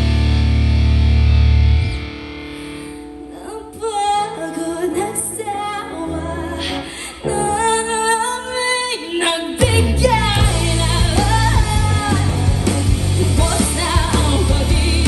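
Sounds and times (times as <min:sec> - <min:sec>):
quiet bass and guitar: 0:00.0 - 0:03.9, 0:09.6 - 0:15.0
heavy electric guitar: 0:00.0 - 0:15.0.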